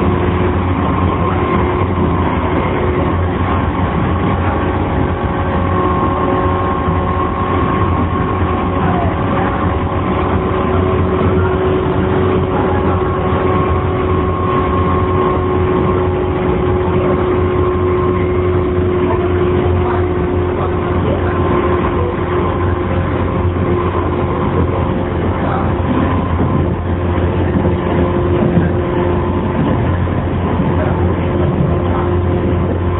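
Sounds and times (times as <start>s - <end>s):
rail noise: 0.0s - 32.9s
train motor hum: 0.0s - 32.9s.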